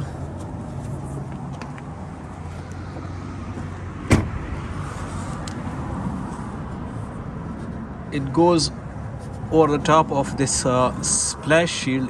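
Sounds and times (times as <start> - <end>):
sharp knock: 4.1 - 4.5.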